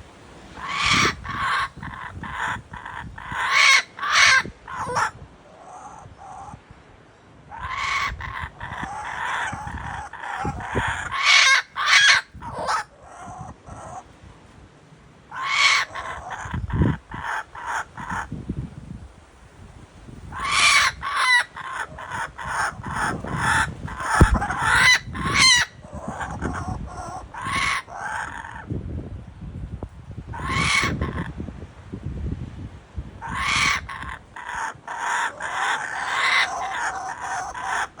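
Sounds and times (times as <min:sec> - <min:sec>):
kookaburra calling: 0:00.6 - 0:06.6, 0:07.5 - 0:14.1, 0:15.3 - 0:18.4, 0:20.3 - 0:28.7, 0:30.4 - 0:31.4, 0:33.2 - 0:38.0.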